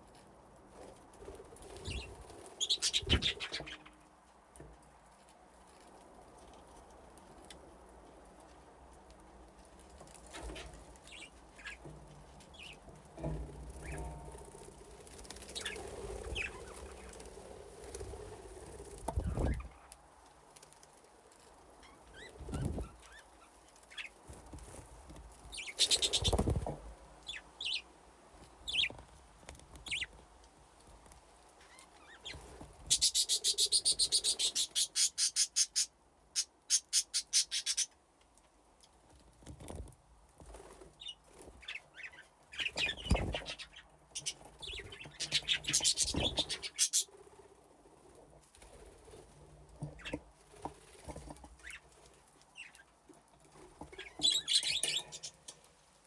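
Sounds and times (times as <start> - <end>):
budgerigars chirping: 1.9 - 3.8, 32.9 - 37.9, 42.0 - 47.1.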